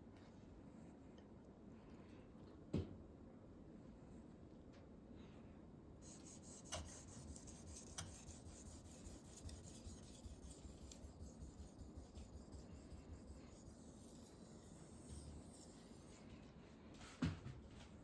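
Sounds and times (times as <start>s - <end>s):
knife scraping on whetstone: 6.2s - 16.2s.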